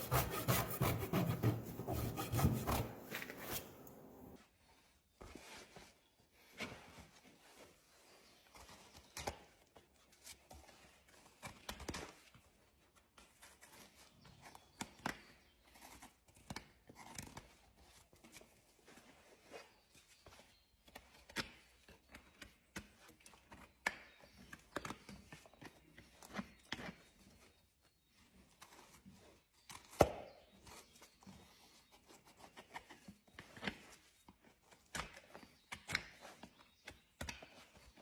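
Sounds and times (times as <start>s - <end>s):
hoof tools scraping hoof: 0.0s - 4.4s.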